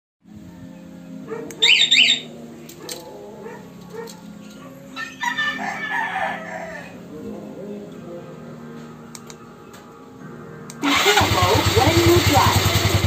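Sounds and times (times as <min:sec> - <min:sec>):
motorcycle alarm chirps: 0:01.6 - 0:02.3
rooster crowing: 0:04.9 - 0:07.1.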